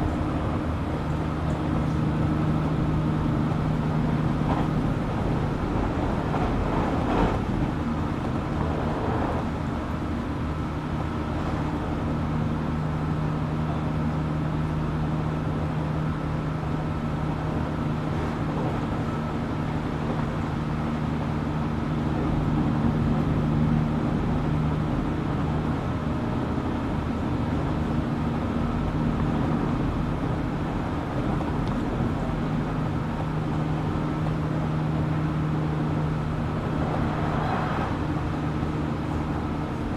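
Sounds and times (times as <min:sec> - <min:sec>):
train rolling noise: 0:00.0 - 0:39.9.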